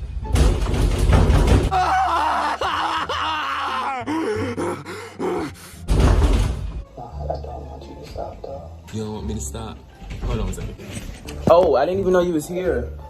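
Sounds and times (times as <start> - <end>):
background music: 0.0 - 13.0
person groaning and moaning: 1.7 - 5.6.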